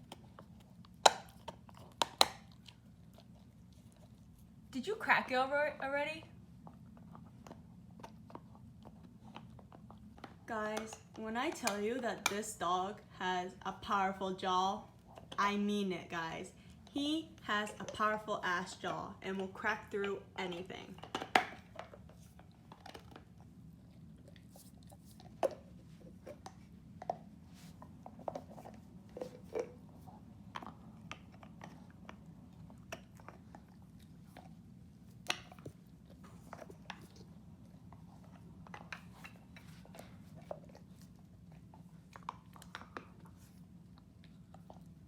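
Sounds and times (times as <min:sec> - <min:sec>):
dog gnawing on antler: 0:00.0 - 0:04.6, 0:06.6 - 0:12.3, 0:19.9 - 0:45.0.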